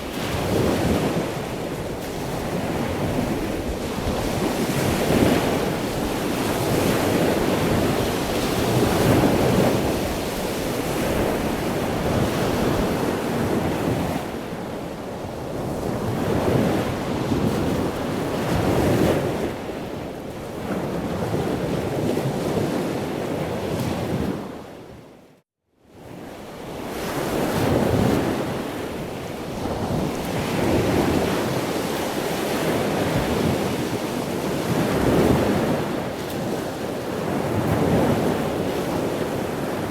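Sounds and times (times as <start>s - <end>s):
ocean surf waves: 26.8s - 39.9s.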